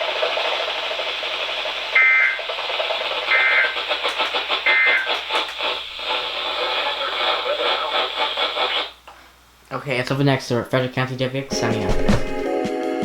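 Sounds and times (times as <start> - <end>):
static hiss: 0.0 - 9.7.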